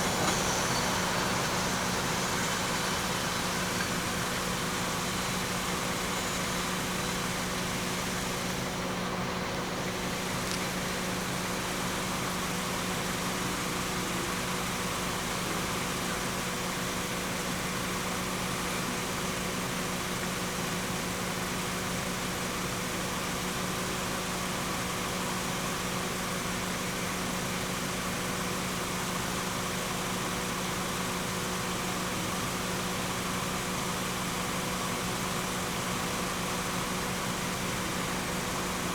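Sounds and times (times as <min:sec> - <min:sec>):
engine idling: 0:00.0 - 0:38.9.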